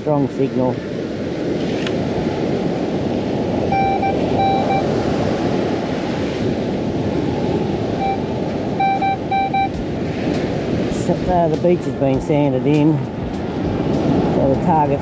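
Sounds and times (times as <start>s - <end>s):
surf: 0.0s - 15.0s
wind noise on microphone: 0.0s - 15.0s
metal detector beeps: 3.7s - 5.0s, 8.0s - 9.8s.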